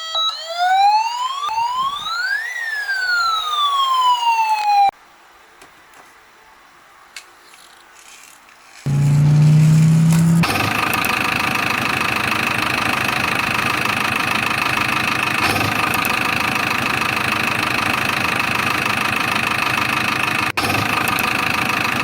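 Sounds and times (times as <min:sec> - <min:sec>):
toy cars whirring and rattling: 0:07.6 - 0:12.2.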